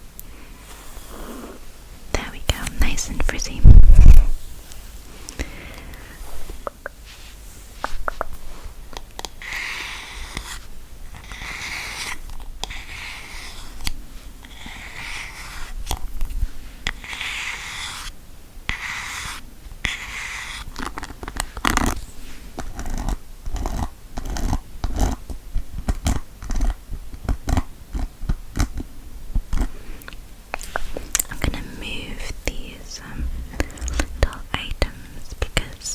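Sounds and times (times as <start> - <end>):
scratching strokes on a surface: 9.4 - 15.8, 16.9 - 18.1, 18.7 - 20.7.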